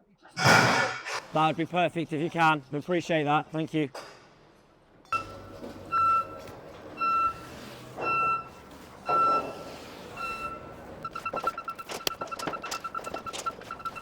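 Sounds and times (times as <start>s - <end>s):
lift warning alarm beeps: 5.1s - 14.0s.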